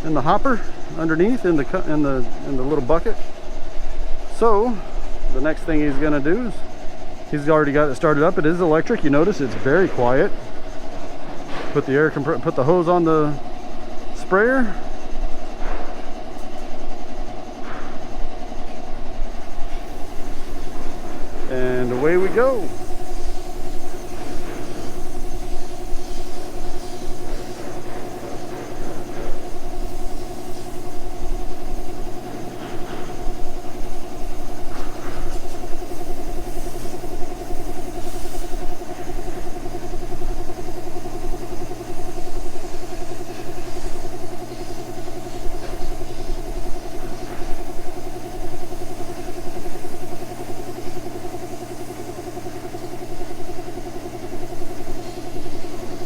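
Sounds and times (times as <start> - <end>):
air compressor humming: 0.0 - 56.0
spray gun spraying: 19.3 - 56.0.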